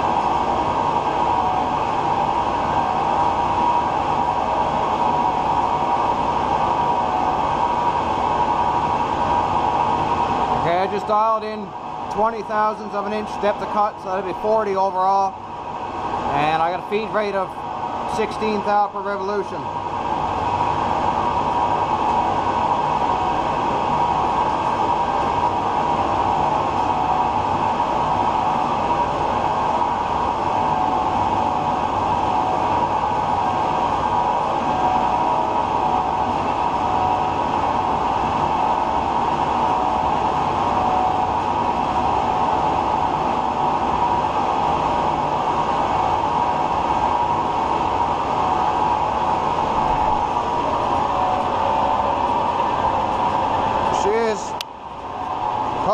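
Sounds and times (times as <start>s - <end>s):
lathe running: 0.0s - 55.9s.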